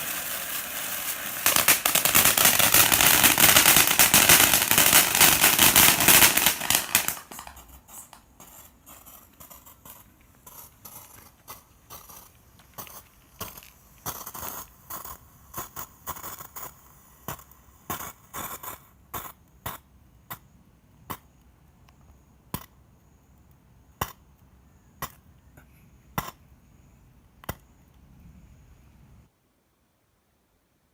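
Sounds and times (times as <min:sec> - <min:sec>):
firework fountain crackling pops: 0:00.0 - 0:20.5, 0:22.5 - 0:22.8.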